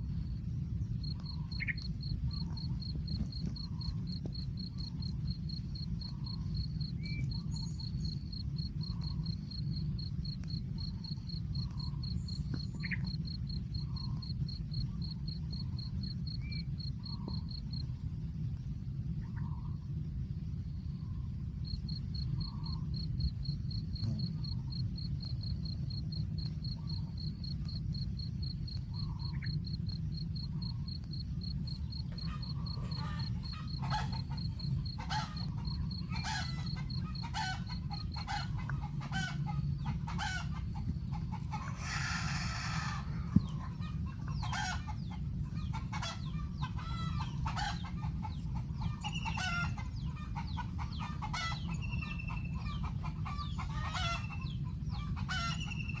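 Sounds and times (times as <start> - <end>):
low rumble: 0.0 - 44.4
birds clucking harshly: 23.8 - 56.0.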